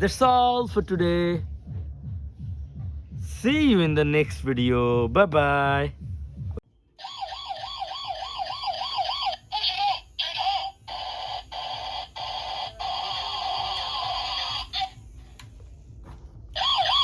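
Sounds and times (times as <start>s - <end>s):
electronic warbling toy siren: 7.0s - 15.0s, 16.6s - 17.0s.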